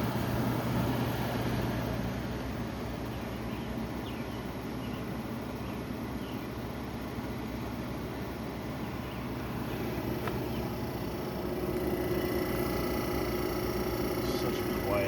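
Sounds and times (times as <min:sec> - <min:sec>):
window air conditioner humming: 0:00.0 - 0:15.0.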